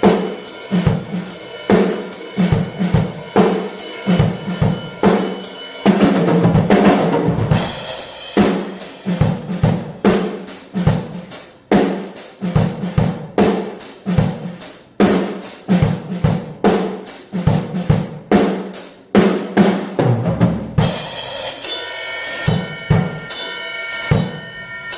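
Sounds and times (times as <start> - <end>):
cymbals: 0.0 - 14.4, 20.8 - 24.9
snare drum: 8.4 - 21.6.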